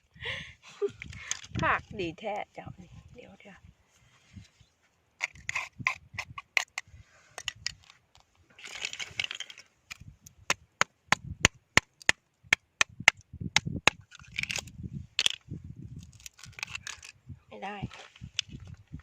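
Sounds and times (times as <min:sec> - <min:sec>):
knife scraping shell: 0:05.2 - 0:09.6
oyster shells clicking and cracking: 0:05.2 - 0:15.4, 0:16.0 - 0:17.2.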